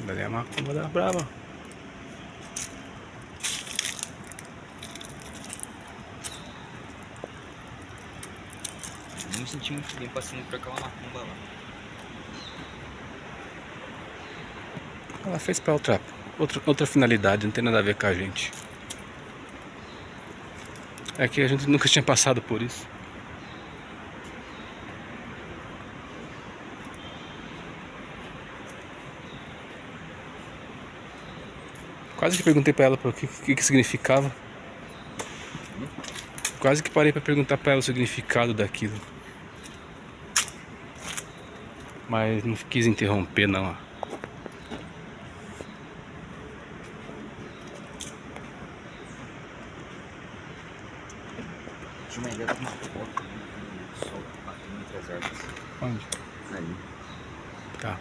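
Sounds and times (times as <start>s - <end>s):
distant city traffic hum: 0.0s - 58.0s
outdoor background noise: 0.0s - 58.0s
short rustle: 2.4s - 7.1s.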